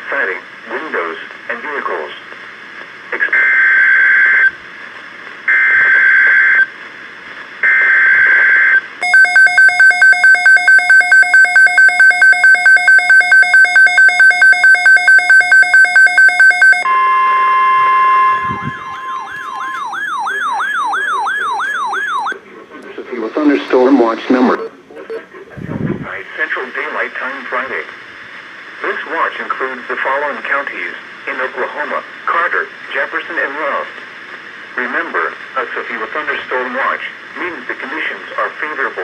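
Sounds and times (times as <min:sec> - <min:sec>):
screeching digital data bursts: 0:09.0 - 0:16.8
brief steady tone: 0:09.0 - 0:22.3
rapid electronic alarm beeps: 0:09.0 - 0:22.4
siren-like warble: 0:09.0 - 0:22.4.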